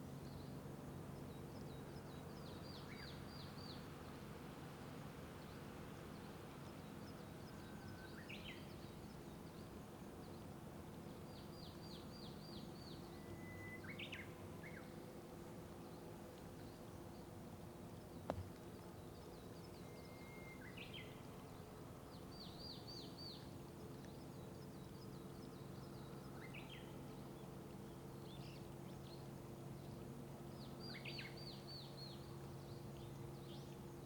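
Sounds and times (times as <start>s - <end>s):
songbirds singing: 18.0s - 34.0s.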